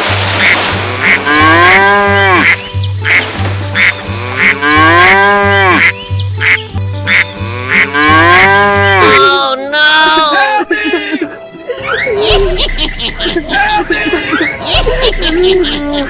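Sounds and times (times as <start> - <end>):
duck quacks: 0.4 - 8.0
cow mooing: 0.9 - 2.6, 4.0 - 5.9, 7.4 - 9.3
music with pulsing bass beat: 12.2 - 16.0.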